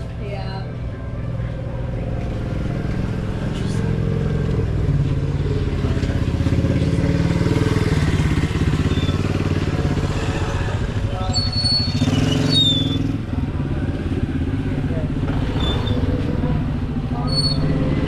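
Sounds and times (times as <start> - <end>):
motorcycle engine rumbling: 0.0 - 18.0
short high squeaks: 8.8 - 9.3, 11.2 - 13.1.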